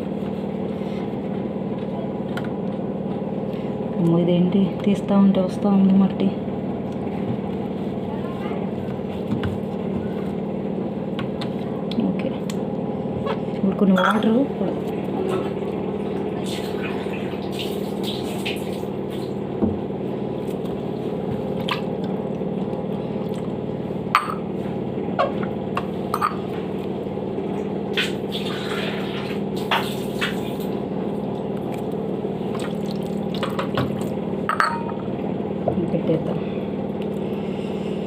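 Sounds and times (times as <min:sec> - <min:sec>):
water running and dripping: 0:15.6 - 0:19.4, 0:32.5 - 0:34.2.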